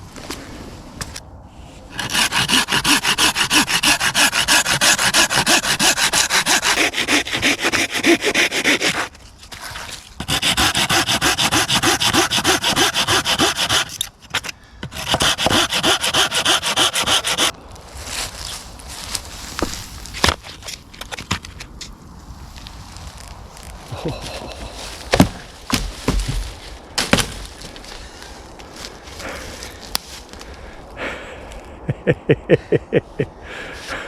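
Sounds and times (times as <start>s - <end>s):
hand saw cutting wood: 1.9s - 17.5s, 24.3s - 27.6s.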